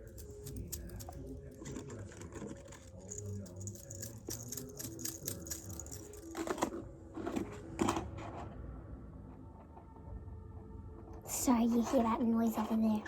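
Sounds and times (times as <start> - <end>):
spring toy coils clattering: 0.0 - 1.8, 2.6 - 6.4.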